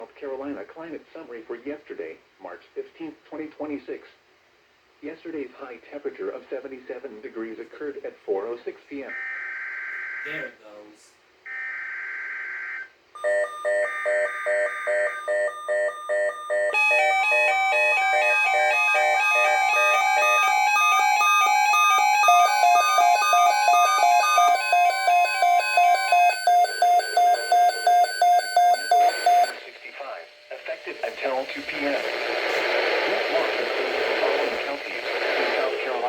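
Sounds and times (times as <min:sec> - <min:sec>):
rapid electronic alarm beeping: 0:11.5 - 0:31.8
digital header tones: 0:13.2 - 0:29.7.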